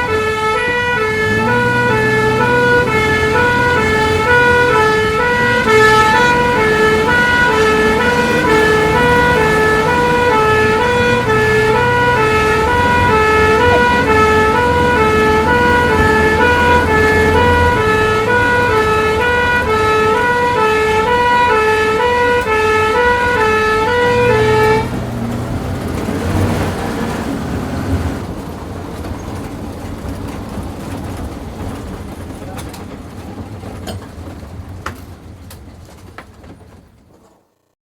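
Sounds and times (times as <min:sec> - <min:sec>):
ambulance two-tone siren: 0:00.0 - 0:28.2
engine and road rumble: 0:00.0 - 0:37.8.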